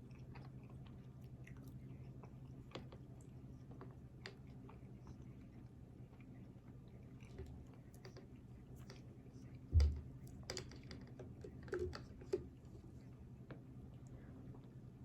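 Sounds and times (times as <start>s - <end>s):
person chewing close up: 0.0s - 9.7s
dull thump: 9.8s - 10.1s
soft knocks: 9.8s - 10.1s.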